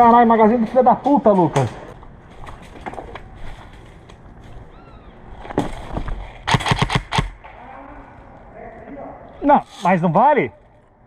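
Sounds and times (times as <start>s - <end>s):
airsoft gun shots: 6.4s - 7.5s.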